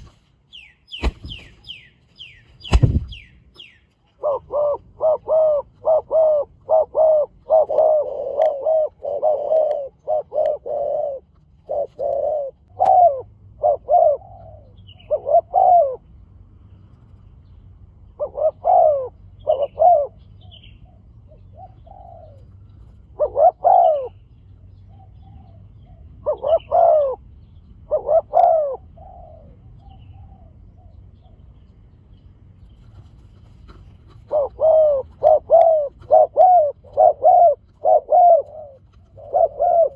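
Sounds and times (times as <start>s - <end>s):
small birds chirping: 0.0s - 4.5s, 13.8s - 39.9s
doves cooing: 4.1s - 16.1s, 18.2s - 24.3s, 24.9s - 31.4s, 32.9s - 39.9s.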